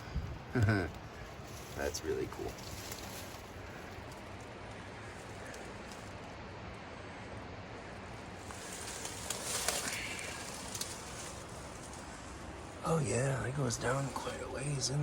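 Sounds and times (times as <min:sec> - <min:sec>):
steady low hiss: 0:00.0 - 0:15.0
rustling and scraping over rocks: 0:00.8 - 0:06.4, 0:08.2 - 0:14.7.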